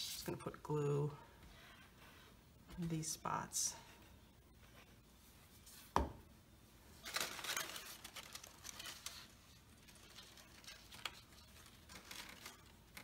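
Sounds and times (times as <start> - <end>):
paper rustling: 7.0 - 13.0.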